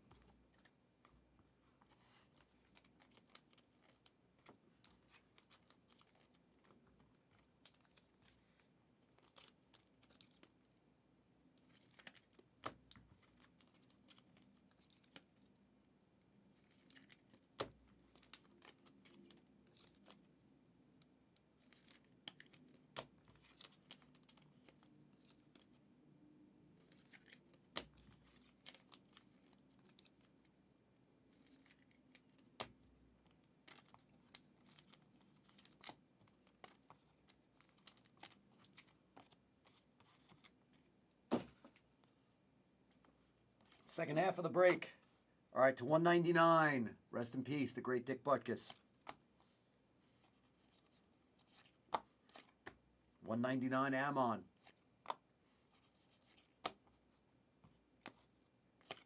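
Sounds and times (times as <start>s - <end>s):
cards rustling: 1.8s - 10.8s, 11.6s - 15.6s, 16.5s - 20.3s, 21.4s - 25.8s, 26.8s - 30.6s, 31.3s - 42.1s, 42.9s - 44.8s, 47.5s - 52.8s, 58.0s - 59.0s.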